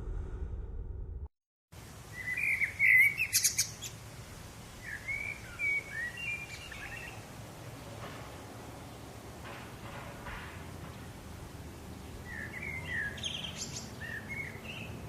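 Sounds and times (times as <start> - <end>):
small bird chirping: 2.1 - 4.0, 12.3 - 15.0.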